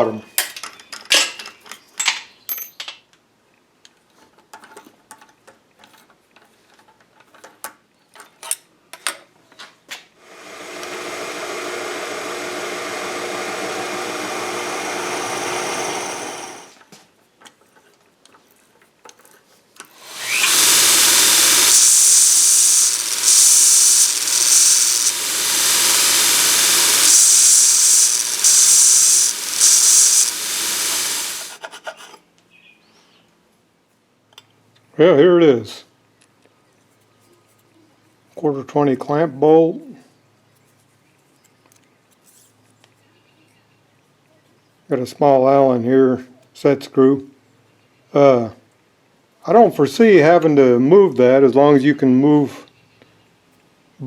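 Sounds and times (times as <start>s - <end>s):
power tool running: 10.2s - 16.8s, 20.0s - 31.6s
harsh hissing power tool: 10.3s - 16.8s, 20.0s - 31.6s.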